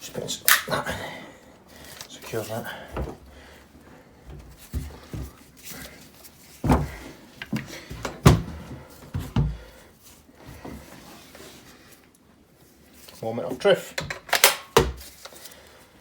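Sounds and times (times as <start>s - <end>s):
knocks and clicks of tool parts: 14.0s - 15.1s.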